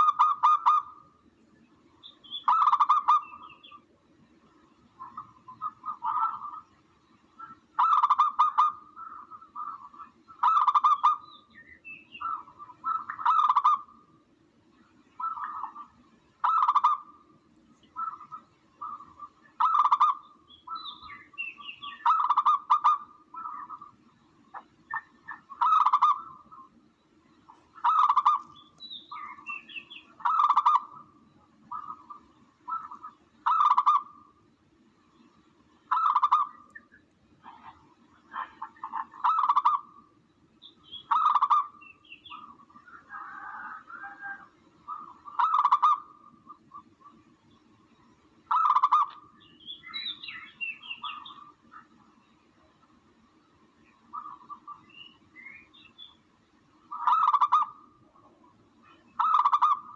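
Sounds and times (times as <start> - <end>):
dove cooing: 0.0 - 1.1, 5.0 - 6.6, 7.4 - 11.2, 12.2 - 14.0, 15.2 - 17.2, 24.5 - 26.7, 27.6 - 34.3, 35.9 - 36.7, 37.4 - 40.0, 41.0 - 47.2, 48.5 - 49.3, 54.1 - 54.9, 56.9 - 59.9
bird chirps: 0.0 - 3.9, 4.5 - 14.0, 14.7 - 58.0
bird calls: 0.0 - 59.9
faint low hum: 0.0 - 59.9.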